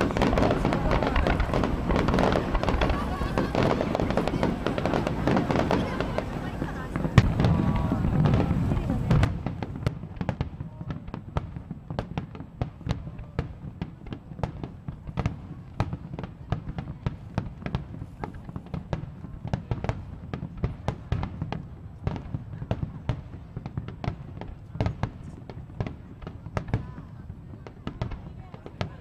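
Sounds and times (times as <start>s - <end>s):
fireworks cracking and popping: 0.0s - 29.0s.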